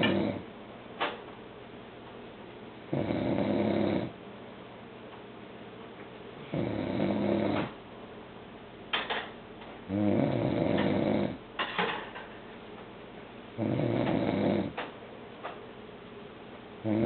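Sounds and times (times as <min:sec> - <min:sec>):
man snoring loudly: 0:00.0 - 0:00.4, 0:02.9 - 0:04.1, 0:06.5 - 0:07.7, 0:09.9 - 0:11.4, 0:13.6 - 0:14.8.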